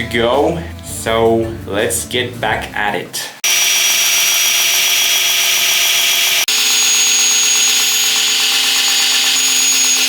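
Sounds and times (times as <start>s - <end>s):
grinder grinding knife blade: 3.4s - 10.0s.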